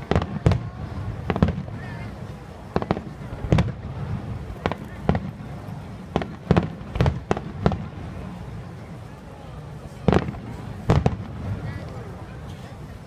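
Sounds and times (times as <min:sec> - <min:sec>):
fireworks bangs: 0:00.0 - 0:09.1, 0:09.9 - 0:13.0.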